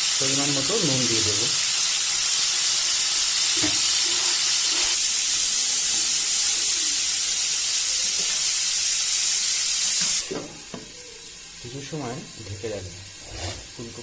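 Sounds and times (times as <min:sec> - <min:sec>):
food sizzling in hot oil: 0:00.0 - 0:14.0.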